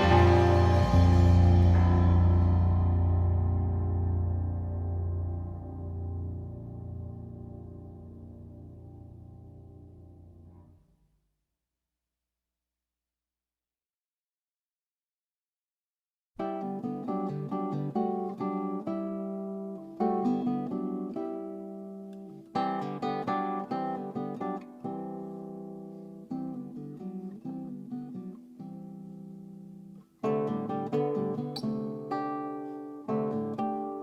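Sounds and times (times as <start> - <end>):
solo acoustic guitar: 0.0 - 10.8, 16.4 - 34.0.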